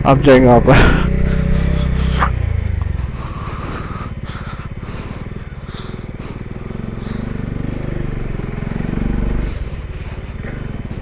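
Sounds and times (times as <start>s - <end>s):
motorbike engine running: 0.0s - 11.0s.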